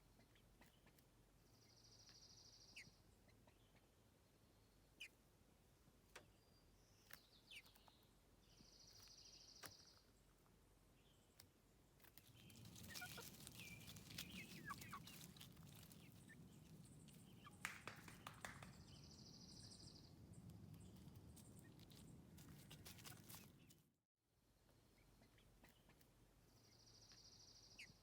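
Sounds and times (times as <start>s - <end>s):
chicks chirping: 7.0s - 8.0s, 11.3s - 23.8s.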